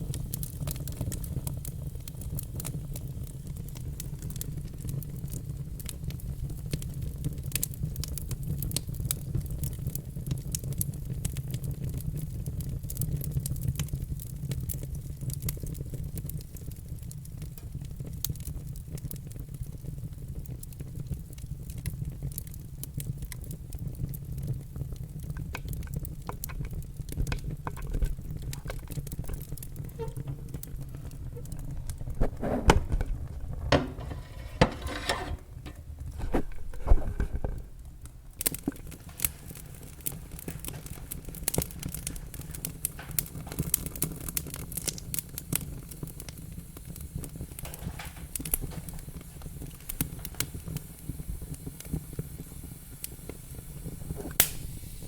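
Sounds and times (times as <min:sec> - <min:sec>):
low fire rumble: 0:00.0 - 0:55.0
wood fire crackling and popping: 0:00.0 - 0:55.0
fire hissing: 0:28.1 - 0:37.7, 0:38.4 - 0:55.0.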